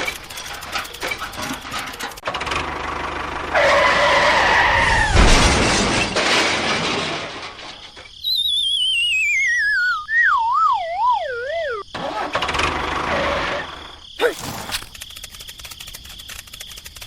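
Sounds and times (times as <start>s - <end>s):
cartoon crash and shattering: 4.8s - 7.6s, 14.2s - 14.9s
wobbling falling whistle: 8.2s - 11.9s.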